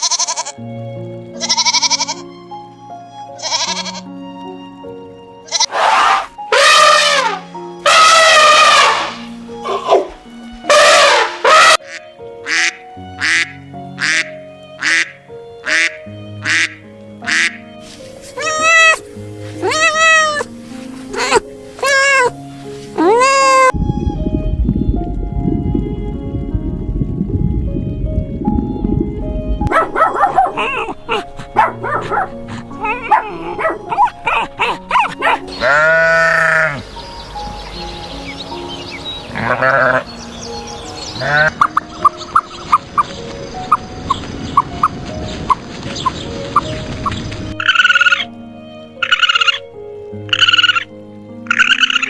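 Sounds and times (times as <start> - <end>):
background music: 0.0 - 52.0
raspy animal call: 5.5 - 17.6, 32.7 - 36.8, 39.3 - 40.1, 41.2 - 42.5, 47.6 - 48.3, 49.0 - 49.6, 50.3 - 50.9, 51.5 - 52.0
animal chirping calls: 45.5 - 48.3, 49.0 - 49.6, 50.3 - 50.9, 51.5 - 52.0.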